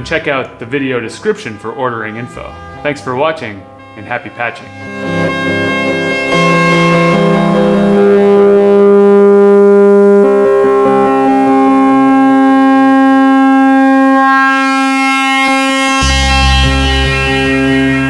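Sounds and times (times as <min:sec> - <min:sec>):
deep bass tone: 0:00.0 - 0:18.0
sustained synthesizer chord: 0:00.0 - 0:18.0.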